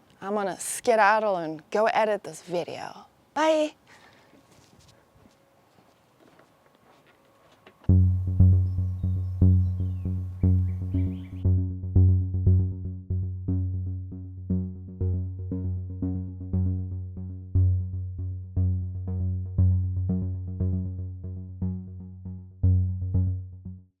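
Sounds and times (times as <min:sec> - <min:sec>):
electronic synthesizer music: 0:07.9 - 0:23.9.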